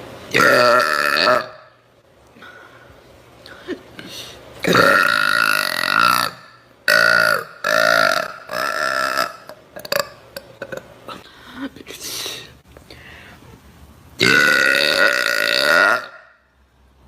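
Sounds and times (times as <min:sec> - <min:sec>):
woman burping: 0:00.4 - 0:01.6, 0:04.6 - 0:11.8, 0:14.2 - 0:16.3.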